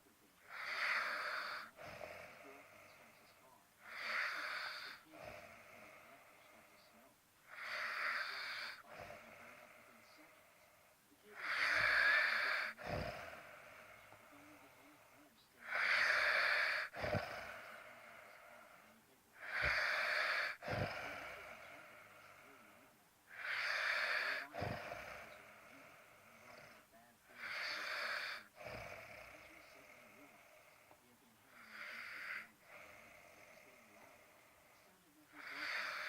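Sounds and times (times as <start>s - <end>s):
rasping snore: 0.0s - 36.0s
short snort: 11.3s - 14.5s, 15.6s - 18.1s, 19.4s - 22.6s, 23.4s - 31.0s.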